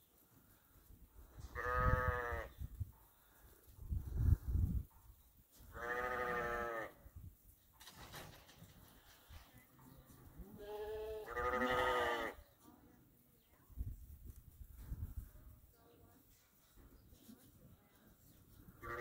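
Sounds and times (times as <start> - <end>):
sheep bleating: 1.5 - 2.5, 5.8 - 7.0, 10.4 - 12.4, 18.8 - 19.0.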